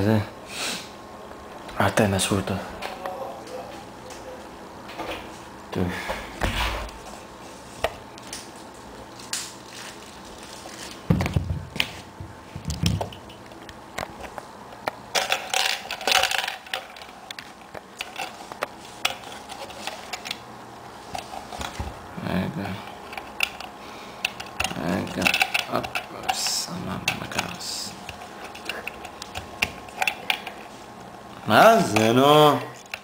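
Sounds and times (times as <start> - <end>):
plastic packaging crinkling: 9.1 - 11.1.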